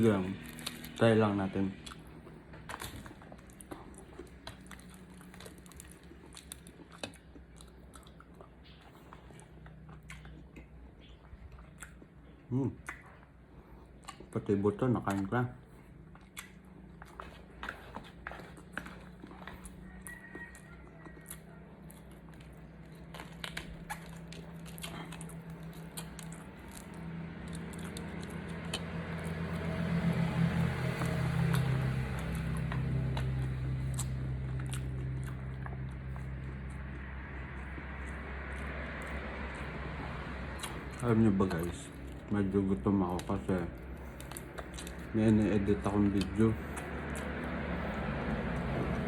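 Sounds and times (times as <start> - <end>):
chewing fried chicken: 0.0 - 49.0
low hum: 21.4 - 49.0.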